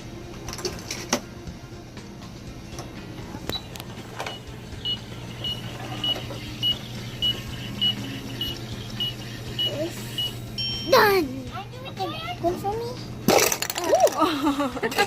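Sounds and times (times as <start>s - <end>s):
toy microwave electronic hum: 0.0s - 15.0s
short high beeps: 4.8s - 11.1s.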